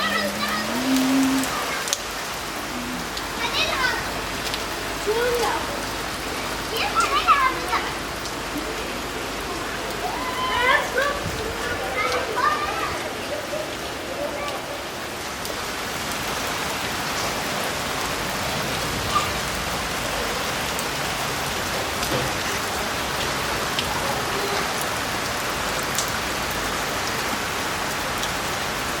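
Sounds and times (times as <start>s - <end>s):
raindrops tapping on surfaces: 0.0s - 29.0s
steady rain falling: 0.0s - 29.0s.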